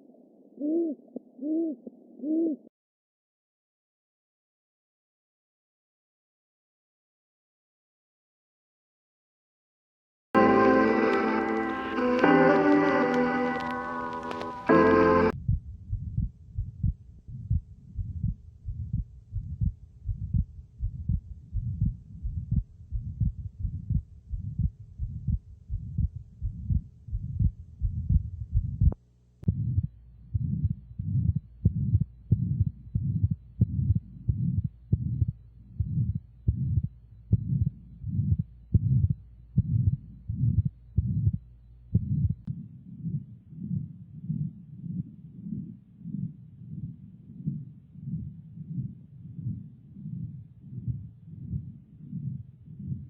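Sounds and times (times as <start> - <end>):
faint steady hum: 10.4 - 53.0
heartbeats with murmur: 15.4 - 42.4, 43.0 - 53.0.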